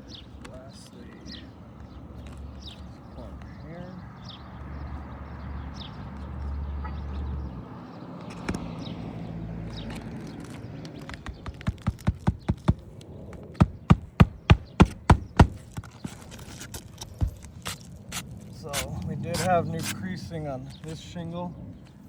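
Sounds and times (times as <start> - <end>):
hammer driving nails into shingle: 10.9 - 18.8.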